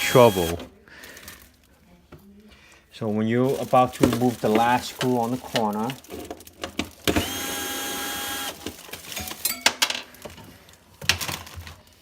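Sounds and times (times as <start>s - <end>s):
cordless drill whining: 0.0s - 0.6s, 7.0s - 8.7s.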